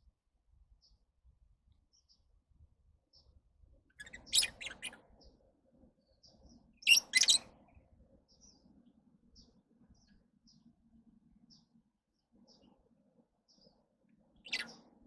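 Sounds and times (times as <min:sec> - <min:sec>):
birds shrill chirps: 0:03.9 - 0:05.4, 0:06.2 - 0:07.5, 0:14.4 - 0:15.0
soft short bird chirps: 0:03.9 - 0:05.4, 0:06.2 - 0:07.5, 0:14.4 - 0:14.9.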